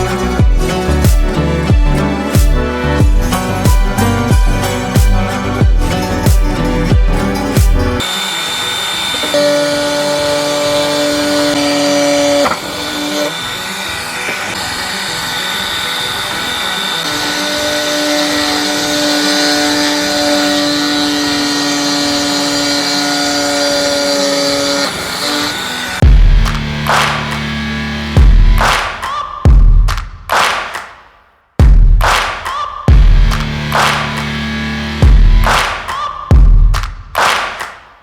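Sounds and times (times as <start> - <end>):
small power tool running: 0.0 - 28.6.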